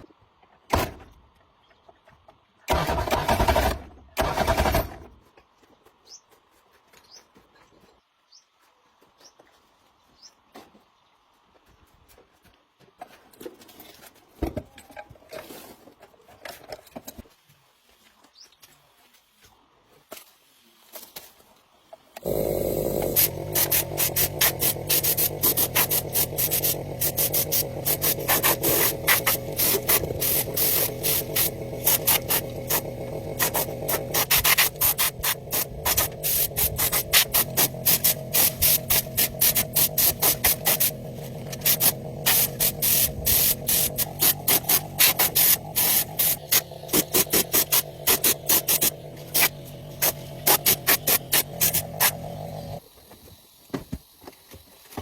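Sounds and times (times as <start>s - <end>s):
steady low hum: 22.2s - 52.8s
abrasive rubbing strokes: 22.3s - 52.8s.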